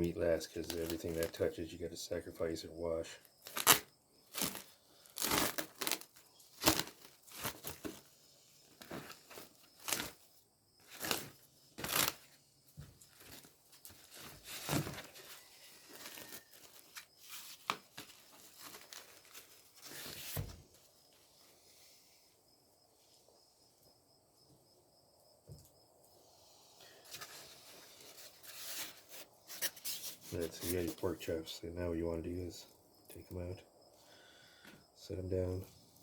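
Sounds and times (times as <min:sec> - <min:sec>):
plastic wrapping ripping and crinkling: 0:00.6 - 0:01.4, 0:03.4 - 0:08.1, 0:08.8 - 0:10.2, 0:10.8 - 0:12.3, 0:13.0 - 0:20.4.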